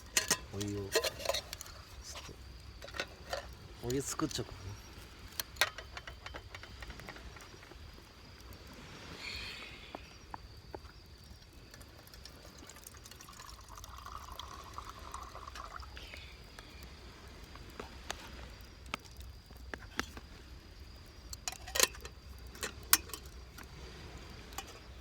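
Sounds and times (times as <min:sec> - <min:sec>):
water being poured: 0:12.6 - 0:16.0.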